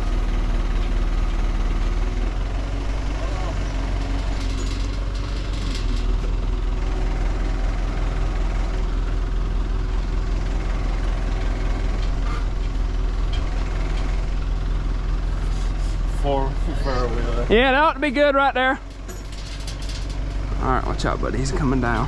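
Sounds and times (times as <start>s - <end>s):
heavy vehicle engine idling: 0.0s - 22.0s
faint rattling: 18.8s - 22.0s.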